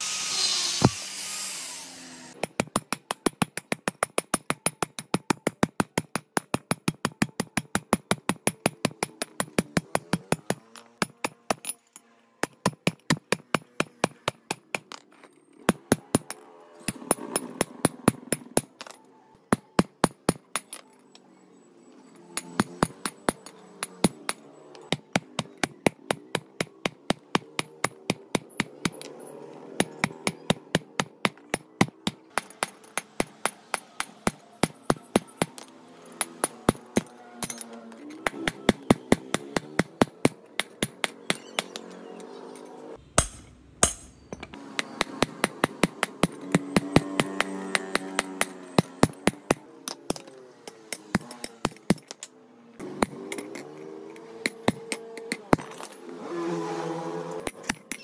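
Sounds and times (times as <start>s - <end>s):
power tool running: 0.0s - 2.4s.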